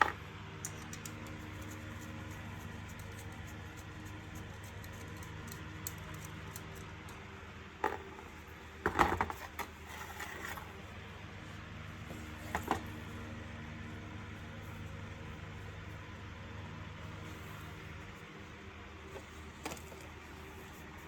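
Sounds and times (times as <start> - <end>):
small parts clicking and clattering: 0.0 - 8.2
steady low hum: 0.0 - 21.0.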